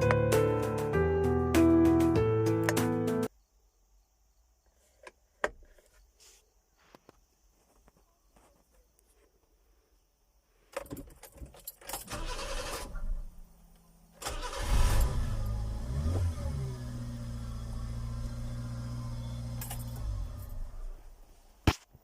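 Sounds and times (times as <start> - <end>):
truck engine starting and idling: 12.0 - 13.4, 14.2 - 21.1.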